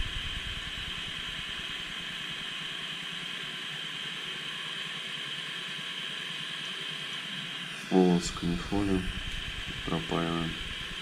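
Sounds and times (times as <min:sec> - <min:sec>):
gas soldering iron hissing: 0:07.5 - 0:11.0.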